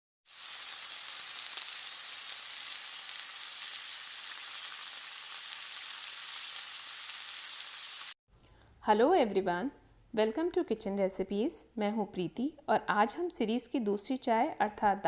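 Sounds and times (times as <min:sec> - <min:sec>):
sizzling with fine crackles: 0:00.2 - 0:08.2.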